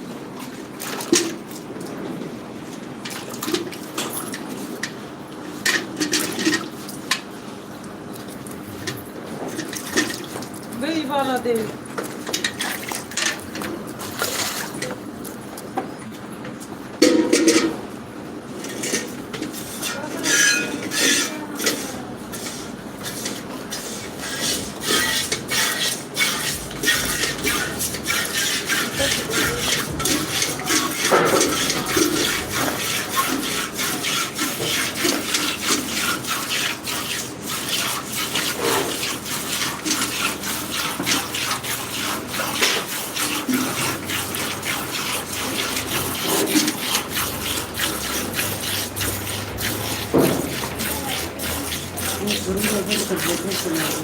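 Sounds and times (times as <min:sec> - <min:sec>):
milk squirting into a pail: 0:18.8 - 0:54.0.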